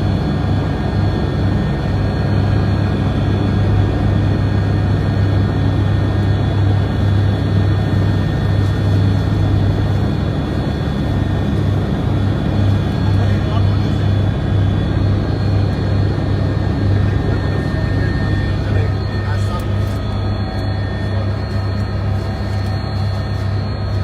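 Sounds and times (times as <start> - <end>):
helicopter running: 0.0 - 24.0.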